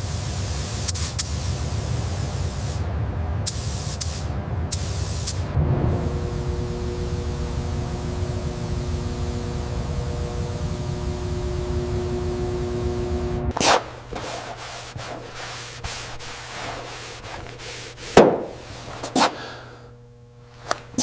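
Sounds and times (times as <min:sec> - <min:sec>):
steady humming noise: 0:00.0 - 0:21.0
rubbing strokes: 0:13.5 - 0:19.6.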